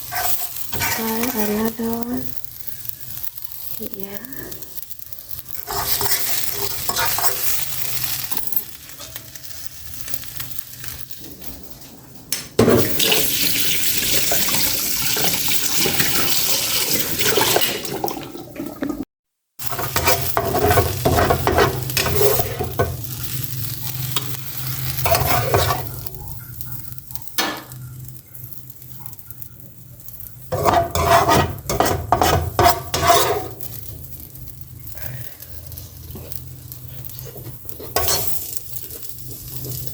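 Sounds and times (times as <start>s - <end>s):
spatula scraping and tapping pan: 0.0s - 1.2s, 5.6s - 9.4s, 19.6s - 23.4s, 24.1s - 26.1s, 30.1s - 34.2s, 36.1s - 39.9s
food sizzling in frying pan: 0.0s - 18.9s, 19.6s - 39.9s.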